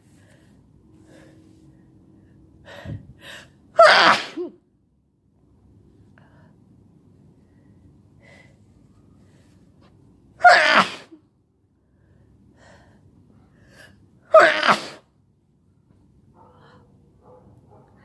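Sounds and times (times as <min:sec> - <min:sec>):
faint breaths: 0:00.0 - 0:03.6, 0:16.4 - 0:18.0
person sneezing: 0:03.8 - 0:04.6, 0:10.4 - 0:11.2, 0:14.3 - 0:15.1.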